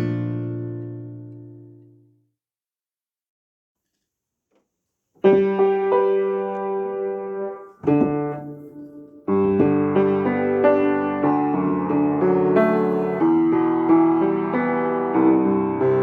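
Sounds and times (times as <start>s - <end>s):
piano music: 5.2s - 16.0s.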